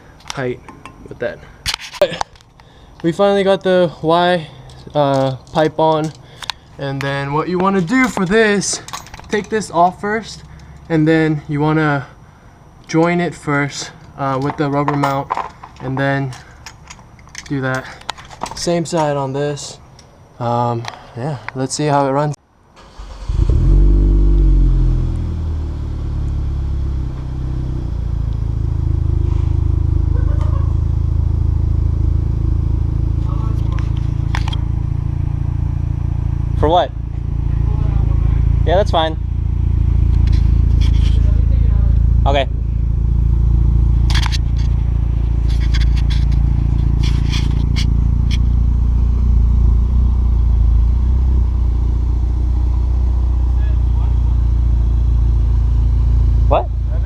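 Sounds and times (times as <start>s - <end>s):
car engine starting and idling: 22.8s - 57.0s.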